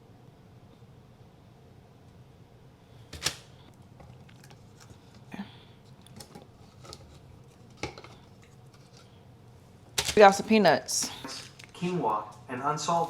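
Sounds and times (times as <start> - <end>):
kitchen items clicking and tapping: 6.0 - 8.5, 9.9 - 11.8.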